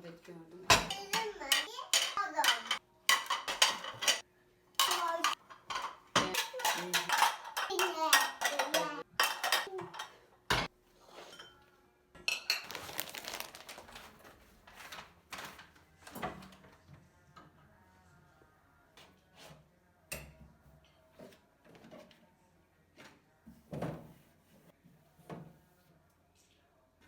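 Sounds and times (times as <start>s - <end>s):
dishes and cutlery clattering: 0.7s - 11.6s, 12.2s - 13.1s.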